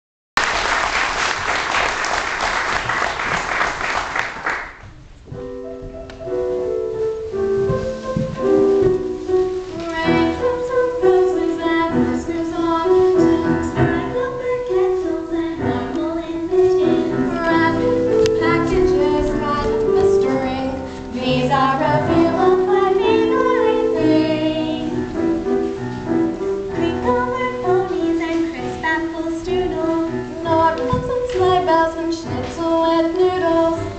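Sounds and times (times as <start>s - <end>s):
people clapping: 0.4s - 4.9s
children singing with music: 6.4s - 33.9s.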